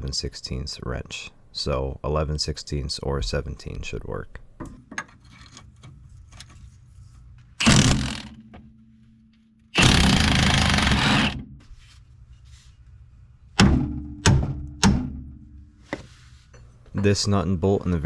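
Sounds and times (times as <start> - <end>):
loud rough tool burst: 7.6 - 8.5, 9.8 - 11.5.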